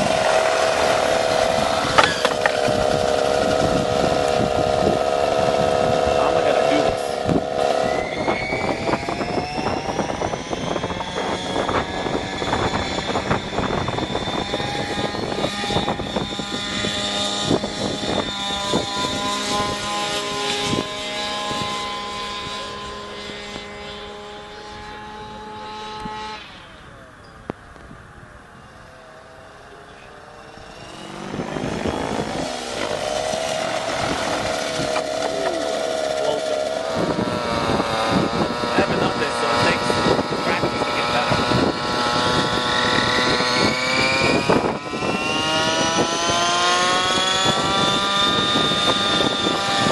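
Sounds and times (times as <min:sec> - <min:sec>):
model helicopter motor whine: 0:00.0 - 0:49.9.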